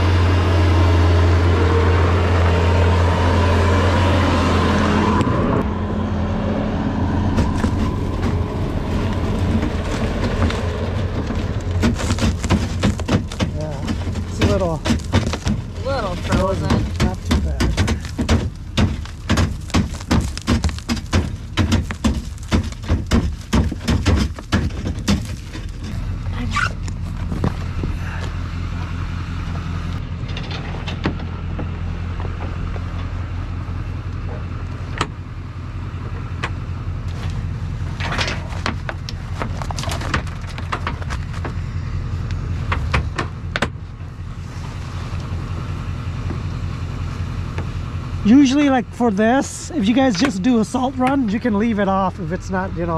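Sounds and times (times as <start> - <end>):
vehicle engine running: 0.0 - 52.9
rapid clattering knocks: 7.3 - 26.1
scattered clicks and knocks: 9.5 - 26.1, 38.0 - 41.6.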